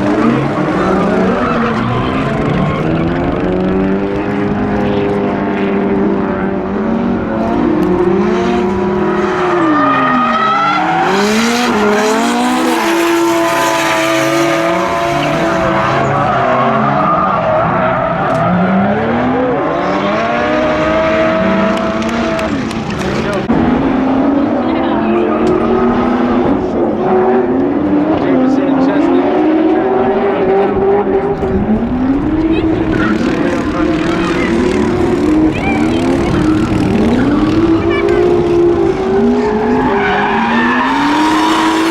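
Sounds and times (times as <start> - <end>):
tyres squealing and skidding: 0.0 - 3.9, 8.3 - 23.5, 32.2 - 41.9
car engines revving hard: 0.0 - 41.9.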